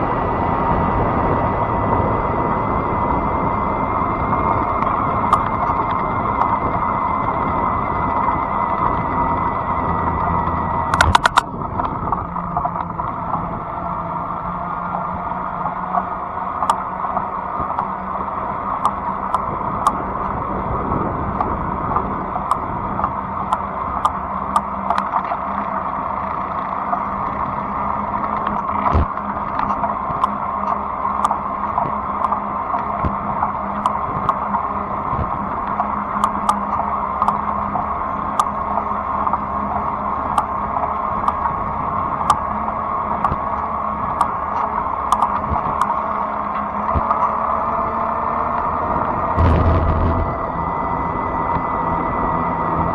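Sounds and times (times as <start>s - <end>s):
wind noise: 0.0s - 14.0s, 16.6s - 25.3s, 48.6s - 52.9s
electric motor hum: 3.1s - 52.9s
sharp ticks: 10.9s - 11.5s, 16.0s - 16.9s, 18.8s - 20.0s, 22.4s - 25.4s, 28.4s - 34.4s, 35.7s - 37.6s, 42.3s - 42.5s, 44.2s - 46.0s.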